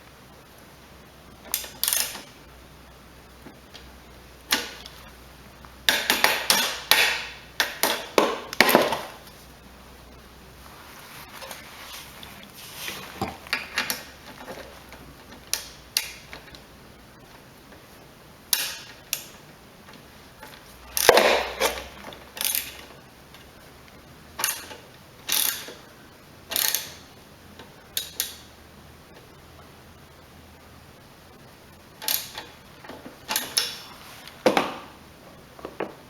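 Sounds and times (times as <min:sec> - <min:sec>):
ratchet wrench clicking: 0:01.5 - 0:02.2, 0:20.9 - 0:22.9, 0:24.4 - 0:25.8, 0:26.5 - 0:27.1, 0:32.0 - 0:32.5.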